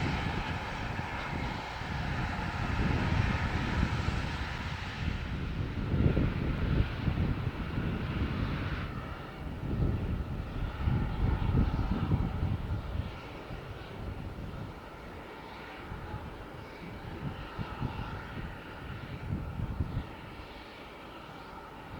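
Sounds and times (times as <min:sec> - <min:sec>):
steam locomotive rumbling: 0:00.0 - 0:05.4
wind buffeting microphone: 0:00.0 - 0:20.6.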